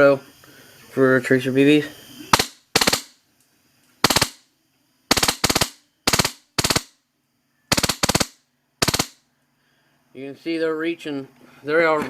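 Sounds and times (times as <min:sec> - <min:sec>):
airsoft gun firing bursts: 0:02.3 - 0:03.2, 0:04.0 - 0:04.4, 0:05.1 - 0:07.0, 0:07.7 - 0:09.2.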